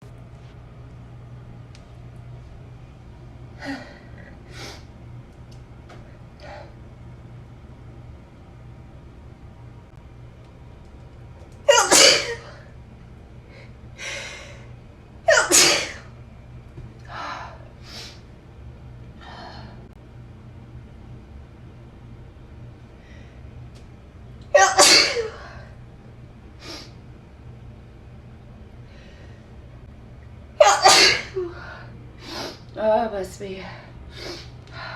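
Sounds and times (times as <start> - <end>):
steady low hum: 0.0 - 34.9
person sneezing: 11.7 - 12.6, 15.3 - 16.0, 30.6 - 31.6.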